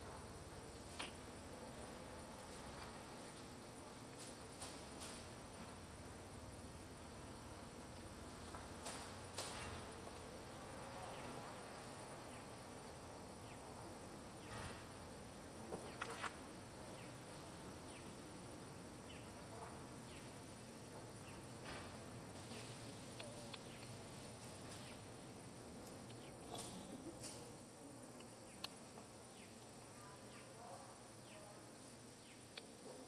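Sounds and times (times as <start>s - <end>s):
soft clicks: 28.2s - 28.8s.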